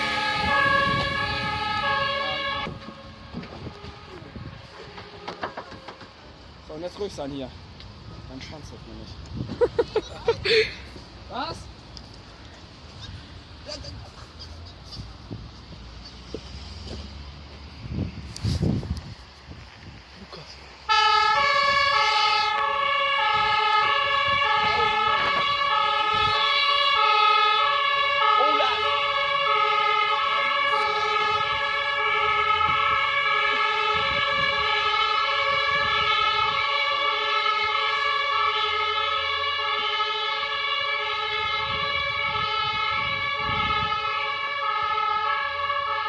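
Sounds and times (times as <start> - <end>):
two-tone fire engine siren: 0.0 - 6.4, 20.9 - 46.0
low vehicle rumble: 0.0 - 26.3.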